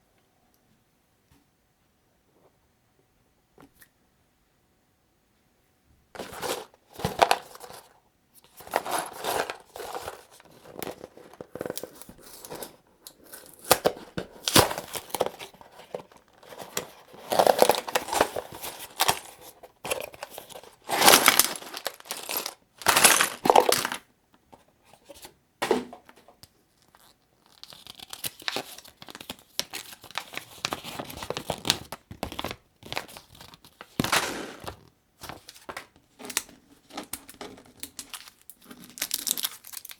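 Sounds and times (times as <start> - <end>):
packaging rustling: 6.2 - 24.1, 26.8 - 39.9.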